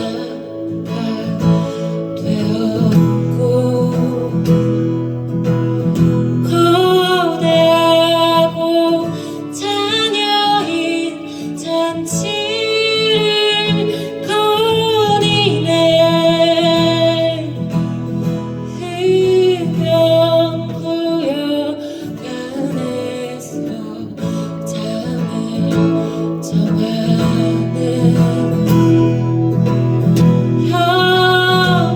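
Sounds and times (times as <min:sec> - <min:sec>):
acoustic guitar: 0:00.0 - 0:31.9
woman singing: 0:00.0 - 0:31.9.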